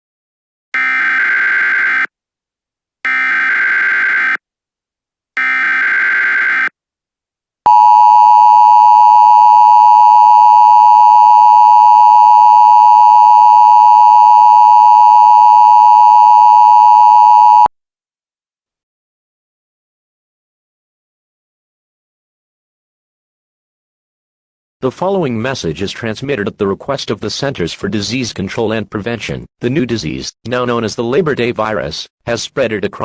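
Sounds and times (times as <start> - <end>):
buzzing data tones: 5.4 - 6.7.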